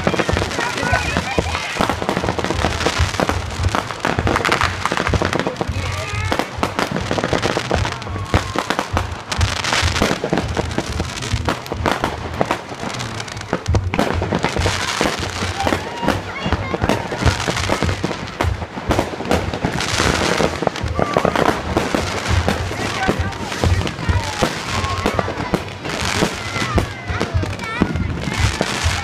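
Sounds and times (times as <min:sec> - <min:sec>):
fireworks bangs and crackles: 0:00.0 - 0:29.0.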